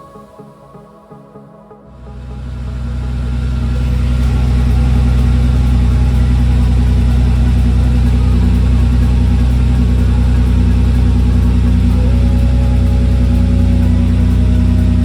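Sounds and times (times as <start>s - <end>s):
car engine running steadily: 2.0s - 15.0s.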